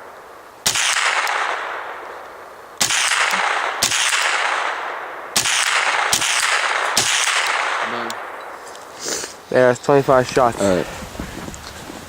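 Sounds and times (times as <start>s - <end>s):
rifle shots with echo: 0.0s - 8.7s.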